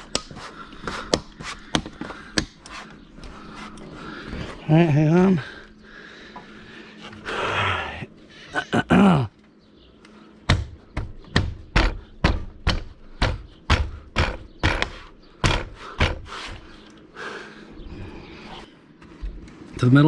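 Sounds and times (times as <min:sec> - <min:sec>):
knocks on window frame: 0:10.5 - 0:16.3.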